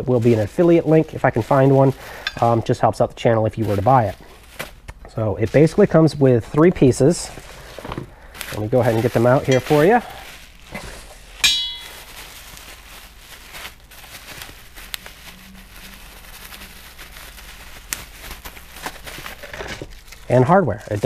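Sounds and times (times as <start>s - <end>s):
metal clang: 2.2s - 2.6s, 11.4s - 12.2s.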